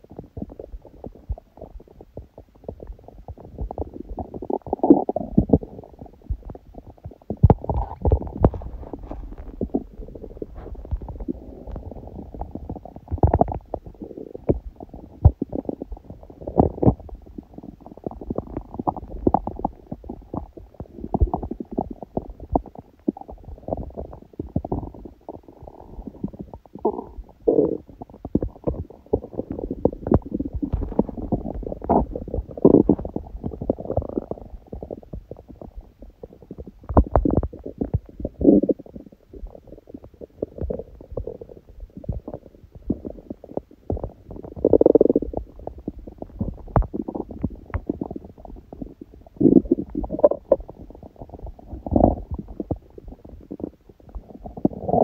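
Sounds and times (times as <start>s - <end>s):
stomach growling and gurgling: 0.0s - 55.0s.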